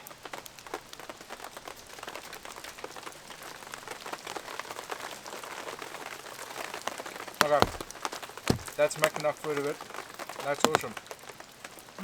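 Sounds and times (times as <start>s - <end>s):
raindrops ticking on surface: 7.4s - 9.0s, 10.6s - 11.0s.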